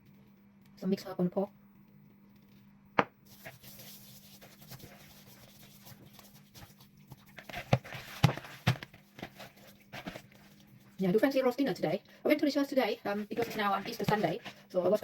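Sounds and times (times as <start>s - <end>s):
soft rustling and squishing: 1.8s - 11.5s, 12.8s - 15.0s
hands rubbing oil into meat: 3.3s - 8.6s.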